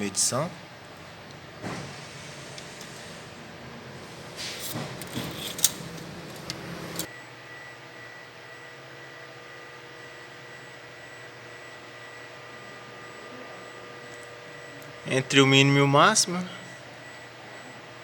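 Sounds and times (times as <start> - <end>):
dipstick scraping and rattling: 4.0 - 7.1
sharp click: 4.4 - 7.1.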